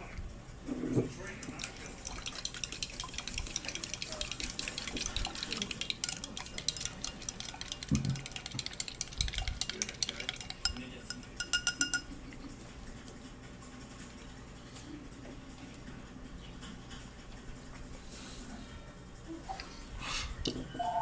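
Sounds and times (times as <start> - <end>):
dishes clattering and clinking: 0.7 - 12.6.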